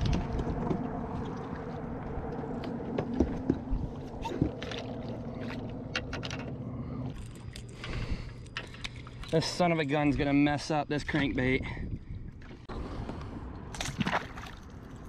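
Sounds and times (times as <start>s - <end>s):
boat motor hum: 0.0s - 10.4s.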